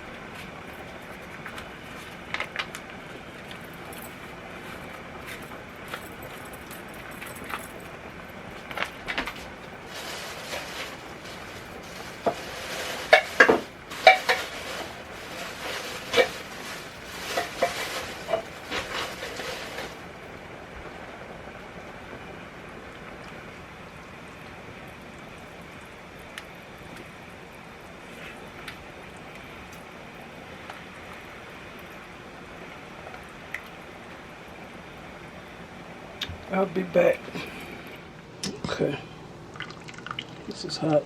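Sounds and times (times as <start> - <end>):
spoon clinking and scraping pot: 9.9 - 20.0.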